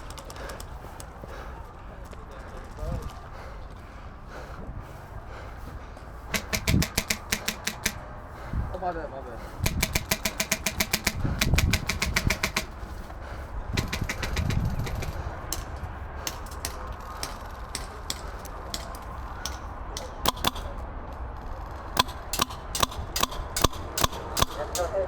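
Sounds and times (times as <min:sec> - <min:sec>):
airsoft guns firing: 0:06.3 - 0:08.2, 0:09.4 - 0:13.0, 0:13.8 - 0:20.8, 0:21.4 - 0:25.0.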